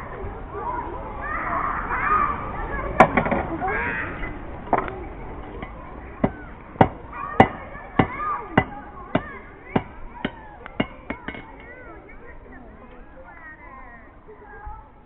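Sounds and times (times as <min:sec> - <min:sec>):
hammer striking iron on anvil: 0:05.6 - 0:11.7.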